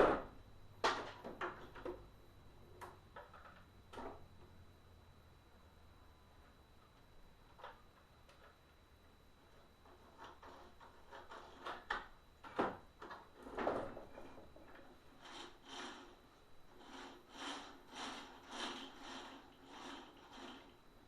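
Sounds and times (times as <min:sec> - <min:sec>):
plastic parts clicking and knocking: 0:00.8 - 0:02.0, 0:02.8 - 0:04.2, 0:10.2 - 0:14.9
rhythmic scraping strokes: 0:15.2 - 0:20.8.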